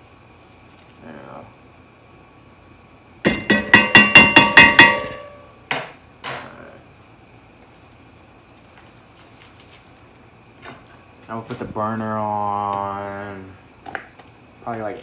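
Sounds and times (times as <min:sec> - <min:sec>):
metal utensil tapping frying pan: 0:03.3 - 0:06.4.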